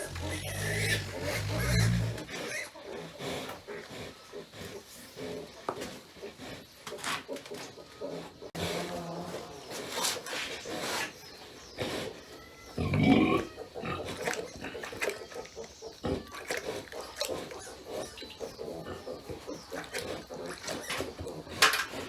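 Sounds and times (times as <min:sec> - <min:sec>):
loud rough pig cry: 0:00.0 - 0:02.8, 0:12.6 - 0:18.2
pigs grunting: 0:00.0 - 0:22.0.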